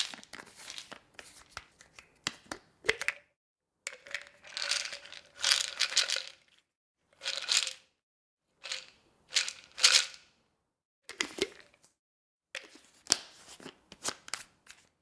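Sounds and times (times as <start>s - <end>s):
pills rattling in a bottle: 3.9s - 6.6s, 7.2s - 7.9s, 8.6s - 10.3s.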